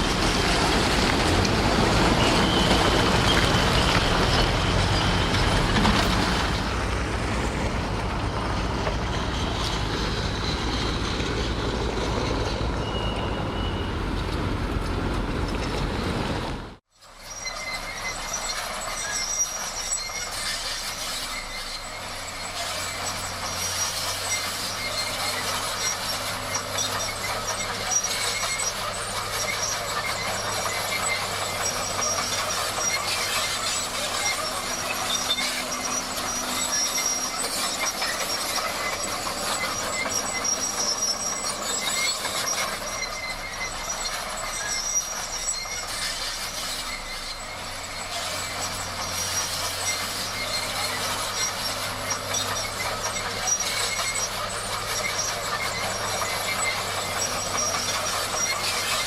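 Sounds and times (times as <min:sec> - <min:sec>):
bulldozer engine running: 0:00.0 - 0:59.0
crawler tracks clanking and squealing: 0:00.0 - 0:59.0.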